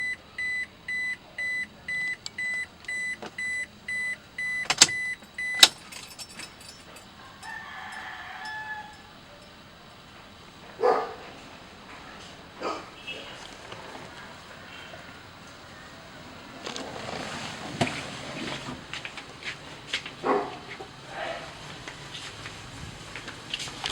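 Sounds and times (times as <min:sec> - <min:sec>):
car warning chime beeping: 0:00.0 - 0:10.1.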